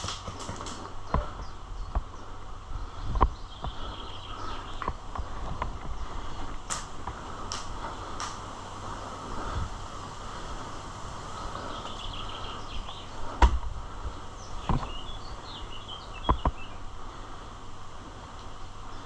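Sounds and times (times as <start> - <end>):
birds chirping: 0.0 - 19.0.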